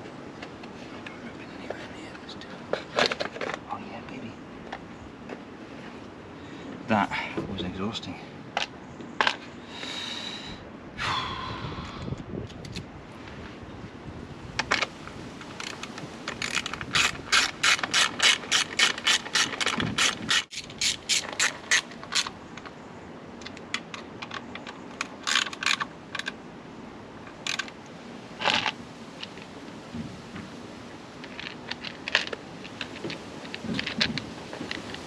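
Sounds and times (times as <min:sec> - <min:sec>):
hand ratchet clicking: 0:15.6 - 0:22.3.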